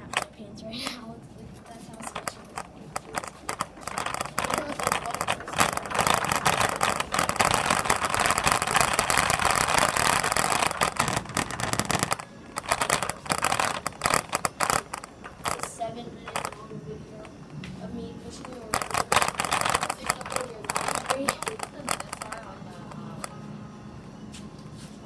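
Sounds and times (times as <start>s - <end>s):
cart wheels rattling on hard floor: 2.0s - 16.7s, 18.3s - 22.6s.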